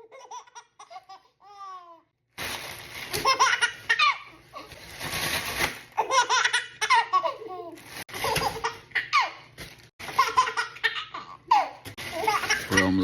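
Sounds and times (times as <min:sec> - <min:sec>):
plastic bag crinkling: 0:02.3 - 0:03.9, 0:04.5 - 0:06.0, 0:07.6 - 0:08.6, 0:09.5 - 0:10.4, 0:12.0 - 0:13.0
baby laughing and squealing: 0:03.1 - 0:04.7, 0:06.0 - 0:13.0.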